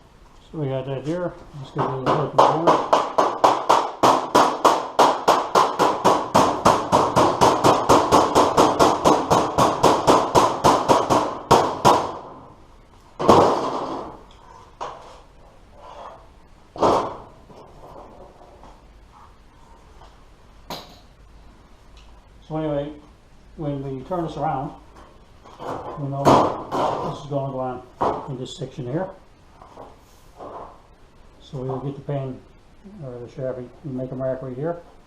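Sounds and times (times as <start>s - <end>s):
hammer striking sheet metal: 1.8s - 12.3s.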